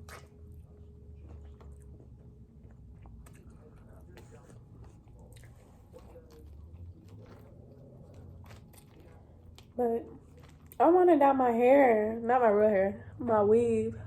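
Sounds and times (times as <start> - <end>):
person chewing food: 0.0 - 10.8.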